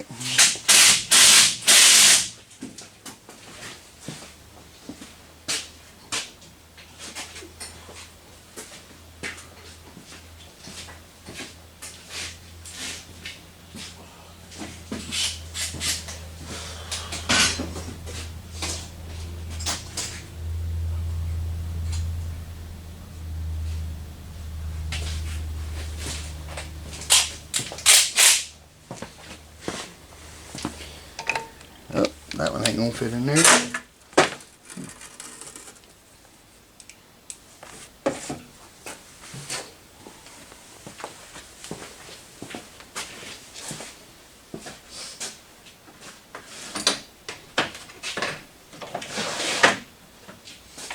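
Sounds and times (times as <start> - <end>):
steady low hum: 3.8 - 37.7
sharp metal clank: 31.2 - 31.6
metal hand tools clinking: 31.2 - 31.7.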